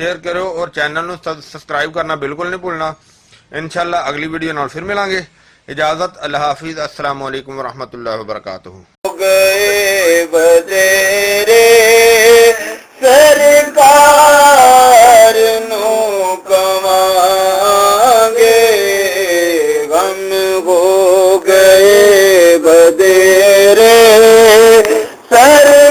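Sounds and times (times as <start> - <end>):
solo voice singing chant-like melody: 9.1 - 25.9.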